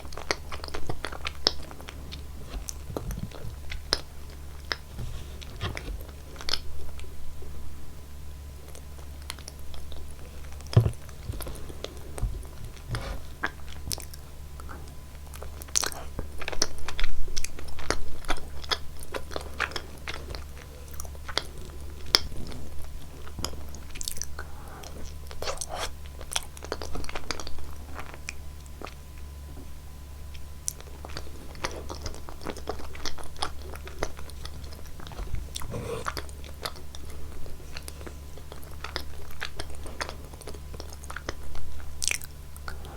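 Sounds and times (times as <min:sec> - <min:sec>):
steady low hum: 0:00.0 - 0:42.9
person chewing crunchy food: 0:30.8 - 0:42.9.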